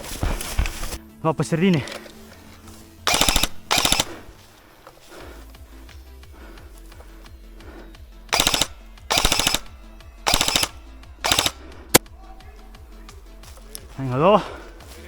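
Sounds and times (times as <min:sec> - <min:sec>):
airsoft rifle full-auto bursts: 0:03.1 - 0:04.3, 0:08.3 - 0:11.7.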